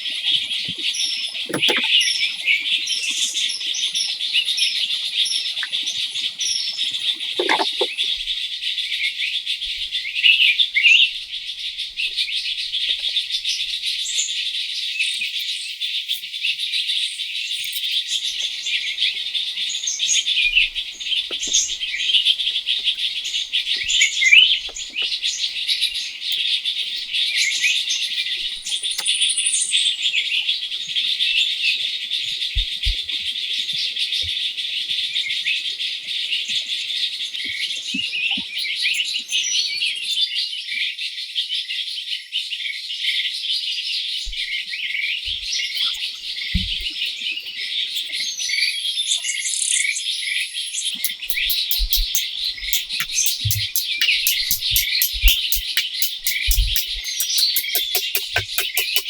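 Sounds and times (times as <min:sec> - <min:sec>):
birds chirping: 0:50.6 - 0:59.0
insect pulsing: 0:51.1 - 0:59.0.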